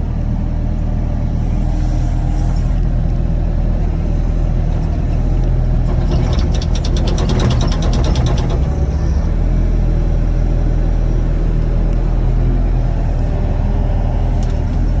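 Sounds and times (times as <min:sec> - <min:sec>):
excavator engine rumbling: 0:00.0 - 0:15.0
fast even rattle: 0:05.8 - 0:09.4.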